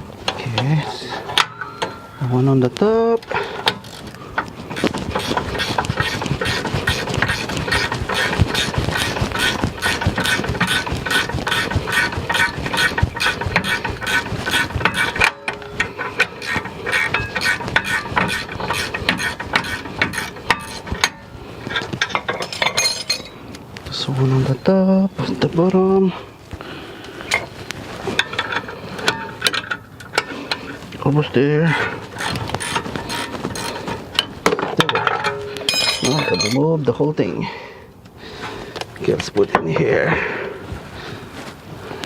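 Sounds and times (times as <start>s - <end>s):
ratcheting wrench clicking: 3.6s - 21.2s.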